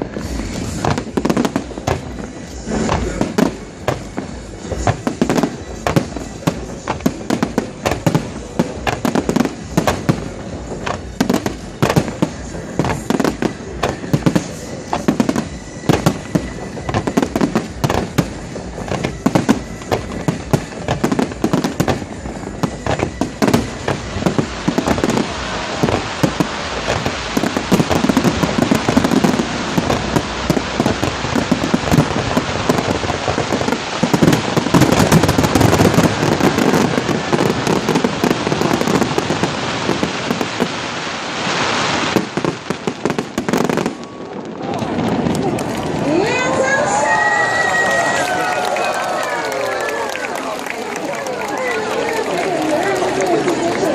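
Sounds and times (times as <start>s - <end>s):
fireworks crackle: 0.0s - 53.9s.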